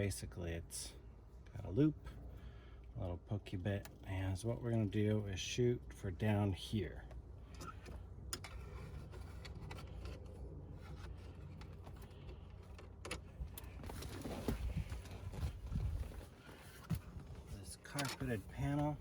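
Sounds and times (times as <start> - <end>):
rustling: 13.7 - 18.6.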